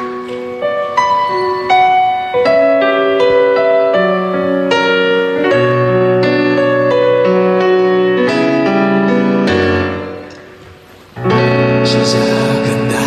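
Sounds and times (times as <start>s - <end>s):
low bass piano notes: 0.0s - 13.0s
slow piano melody: 0.0s - 13.0s.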